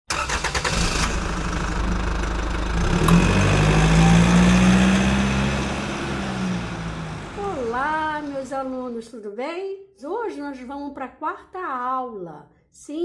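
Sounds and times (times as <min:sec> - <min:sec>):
engine running: 0:00.1 - 0:08.8.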